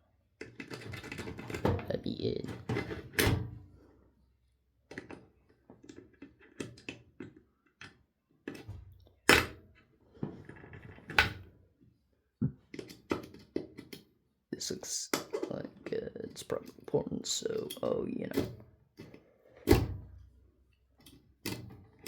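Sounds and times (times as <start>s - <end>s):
clicks and knocks of parts handled: 4.8s - 11.4s, 12.6s - 14.2s, 21.0s - 22.0s.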